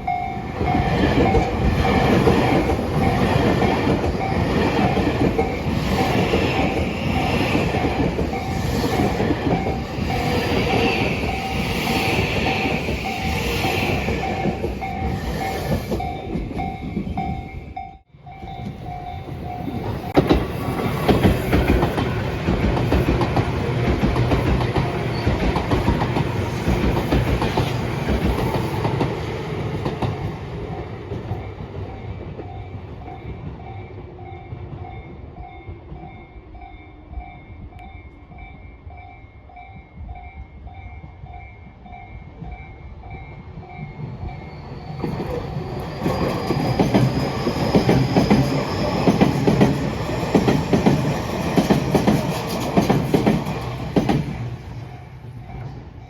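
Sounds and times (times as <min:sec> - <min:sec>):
level-crossing bell dinging: 0:00.0 - 0:03.4, 0:11.2 - 0:20.3
train passing: 0:00.0 - 0:56.0.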